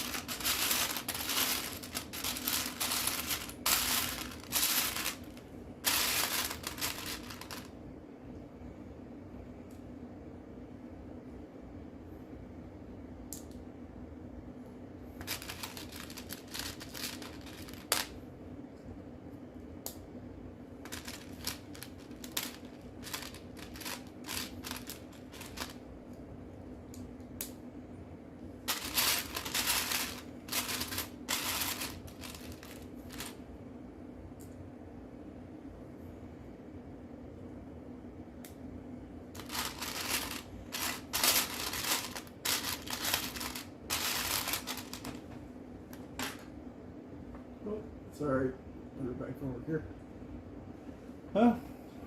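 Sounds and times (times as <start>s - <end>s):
plastic toy bricks rattling: 0.0s - 7.7s, 15.2s - 18.1s, 20.9s - 25.8s, 28.7s - 33.4s, 39.4s - 45.1s
steady low hum: 0.0s - 52.0s.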